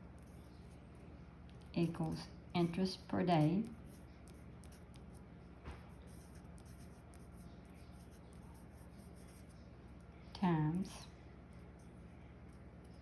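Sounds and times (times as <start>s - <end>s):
pen scratching on paper: 1.8s - 5.2s, 5.9s - 9.6s.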